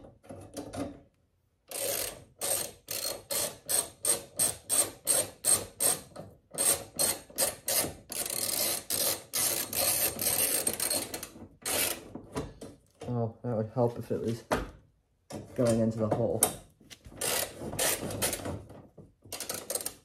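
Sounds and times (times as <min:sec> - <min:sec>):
ratchet wrench clicking: 0:01.7 - 0:06.0, 0:07.4 - 0:11.1, 0:19.4 - 0:20.0.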